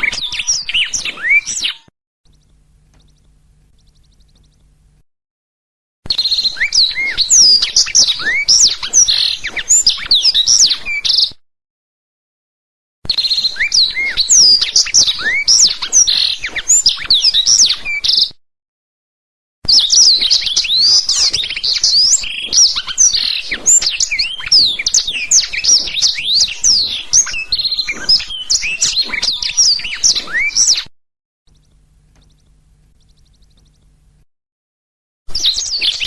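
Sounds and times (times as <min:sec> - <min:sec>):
canary singing: 0:00.0 - 0:05.0, 0:19.7 - 0:30.8, 0:31.5 - 0:34.2, 0:35.3 - 0:36.0.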